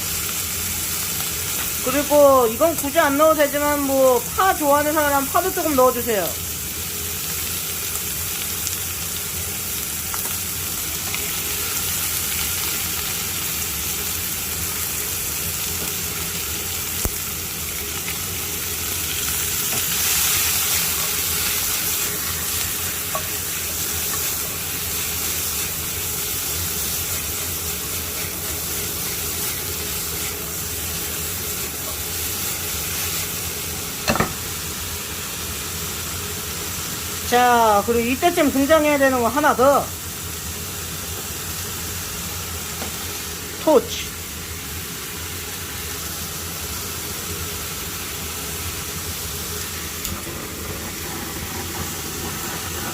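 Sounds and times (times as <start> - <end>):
meat sizzling in a frying pan: 0.0 - 52.9
sharp knock: 34.1 - 34.4.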